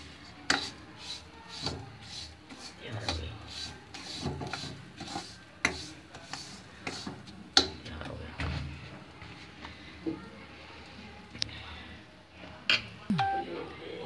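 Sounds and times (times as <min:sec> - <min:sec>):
utensil scraping a pan: 0:00.5 - 0:07.7.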